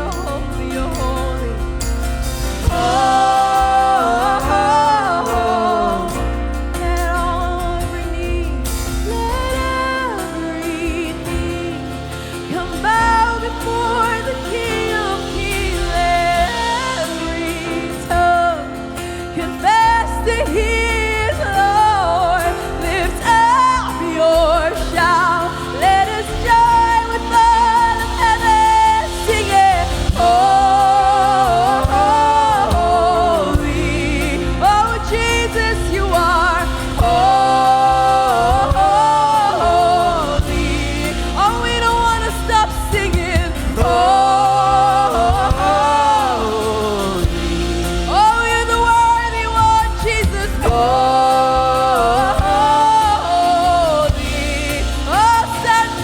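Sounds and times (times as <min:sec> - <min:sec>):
full band playing: 0:00.0 - 0:56.0
person singing with vibrato: 0:00.0 - 0:56.0.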